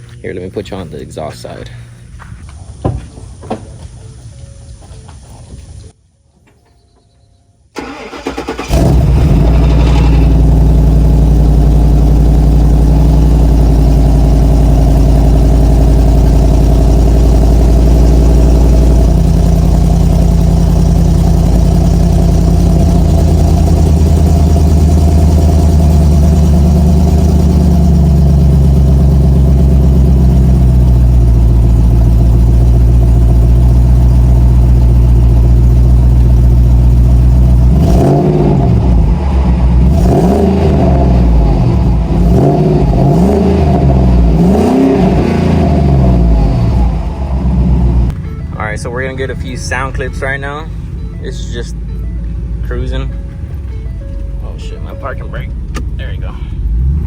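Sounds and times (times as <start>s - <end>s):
loud engine fast idle: 7.8s - 37.7s
engine cranking: 7.8s - 43.5s, 47.8s - 57.0s.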